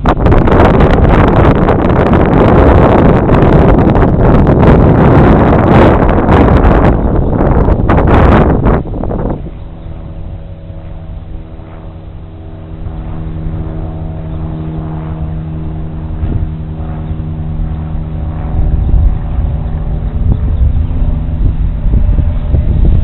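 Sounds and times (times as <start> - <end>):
electric motors and propellers buzzing: 0.0 - 23.0
low wind rumble: 0.0 - 23.0.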